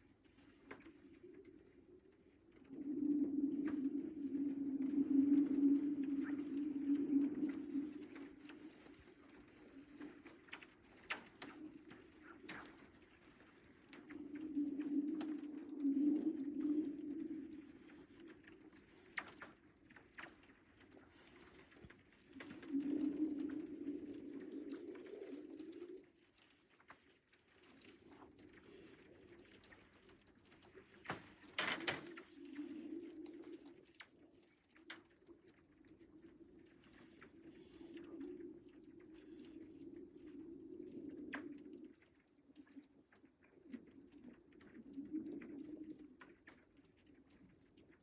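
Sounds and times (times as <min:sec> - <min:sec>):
lake ice humming: 0:00.0 - 0:19.6
small ice ticks: 0:07.5 - 0:15.8.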